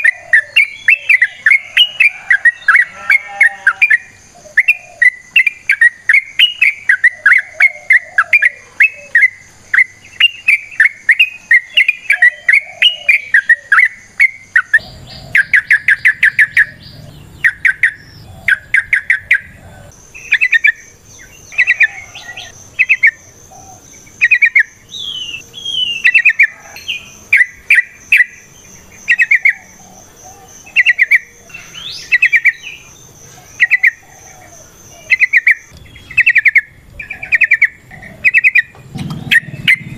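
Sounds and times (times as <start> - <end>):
bird singing chattering notes: 0.0 - 39.9.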